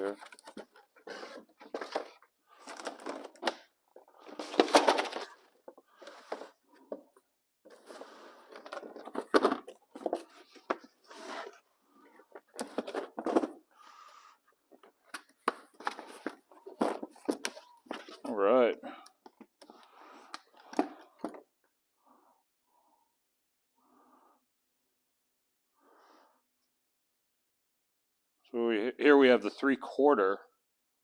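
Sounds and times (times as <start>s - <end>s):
plastic packaging rustling and tearing: 4.2s - 6.6s.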